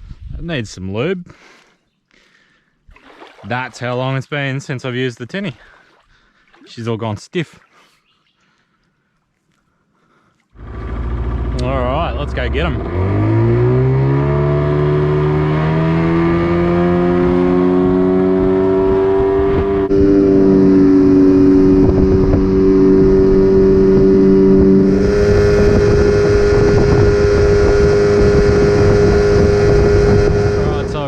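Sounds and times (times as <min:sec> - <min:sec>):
wind: 0:00.0 - 0:31.0
water noise: 0:02.9 - 0:08.9, 0:10.3 - 0:31.0
outboard motor running: 0:10.5 - 0:31.0.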